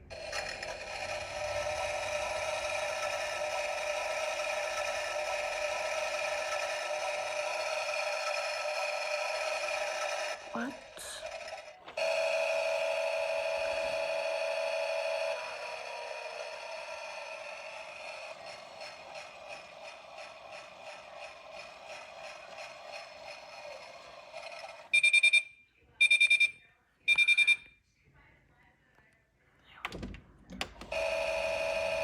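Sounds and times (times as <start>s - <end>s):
washing machine held tone: 0.0s - 27.7s, 30.0s - 32.0s
loud beeps: 25.0s - 27.7s.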